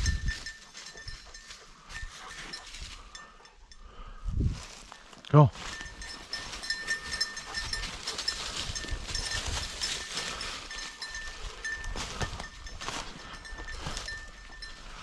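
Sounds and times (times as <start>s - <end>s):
dog collar bell jingling: 0.0s - 15.0s
brush rustling: 4.6s - 15.0s.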